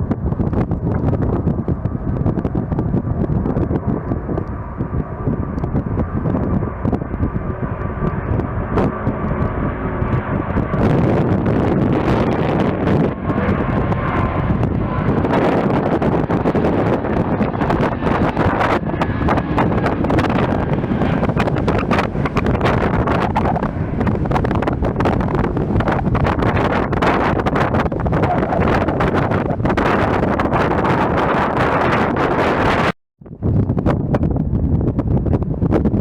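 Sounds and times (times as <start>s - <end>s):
strong wind buffeting microphone: 0.0s - 36.0s.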